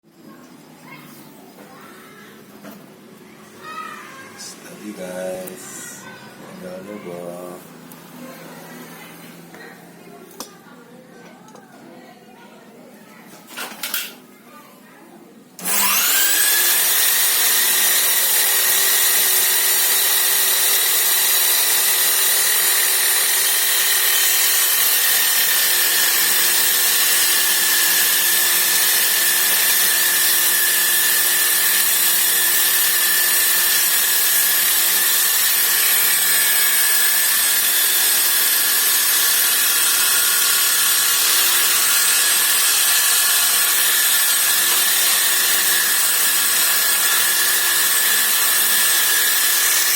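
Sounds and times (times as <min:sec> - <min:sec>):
electric drill saw blade running: 0:15.6 - 0:49.9.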